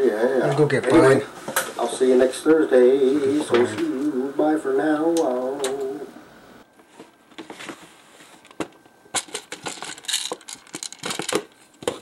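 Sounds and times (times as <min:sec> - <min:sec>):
small hard objects clicking: 0:09.2 - 0:12.0.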